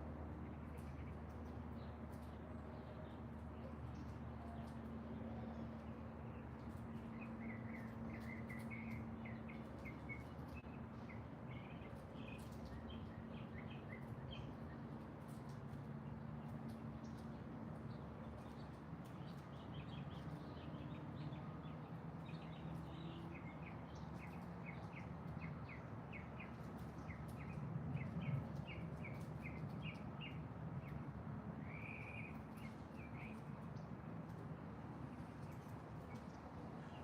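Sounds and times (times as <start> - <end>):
songbird chirping: 0.4 - 37.0.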